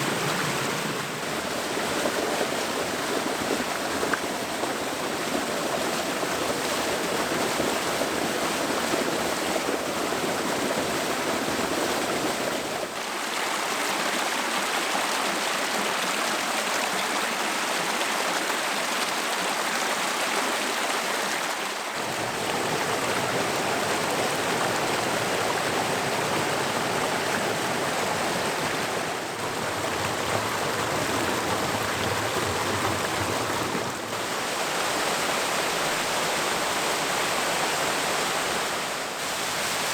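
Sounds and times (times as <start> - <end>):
waterfall rushing: 22.0 - 39.9.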